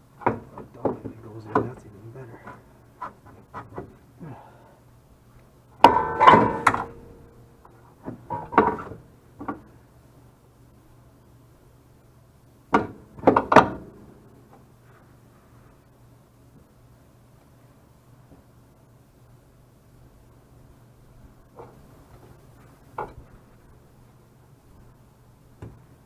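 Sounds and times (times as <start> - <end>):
metal clanks and knocks: 5.8 - 7.2, 8.0 - 9.6.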